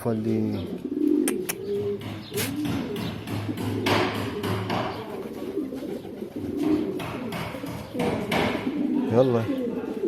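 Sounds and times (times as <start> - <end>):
pigeons cooing: 0.1 - 10.0
sharp knocks: 1.6 - 5.1, 6.6 - 8.7.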